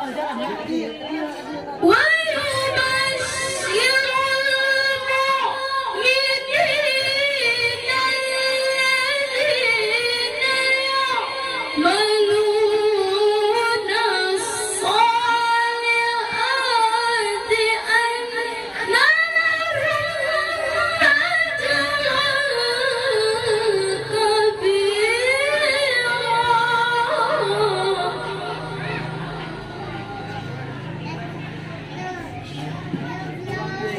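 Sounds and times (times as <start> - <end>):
woman reciting melodically: 0.0 - 33.9.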